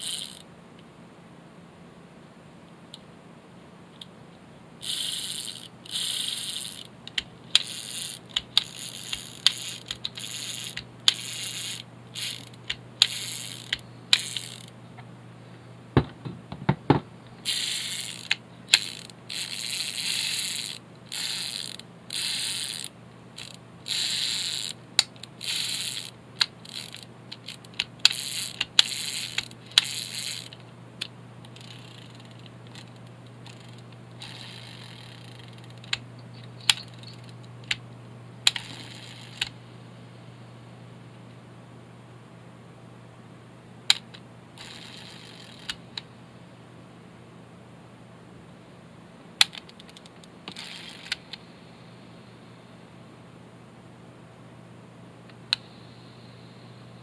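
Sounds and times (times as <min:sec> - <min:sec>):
fishing reel whirring and ratcheting: 0:00.0 - 0:00.4, 0:04.8 - 0:06.9, 0:07.5 - 0:14.7, 0:17.4 - 0:30.6, 0:31.5 - 0:37.3, 0:38.5 - 0:39.5, 0:44.6 - 0:45.8, 0:50.5 - 0:51.2
knocks: 0:16.0 - 0:17.1
sharp clicks: 0:25.0 - 0:37.8, 0:38.5 - 0:39.6, 0:43.9 - 0:44.8.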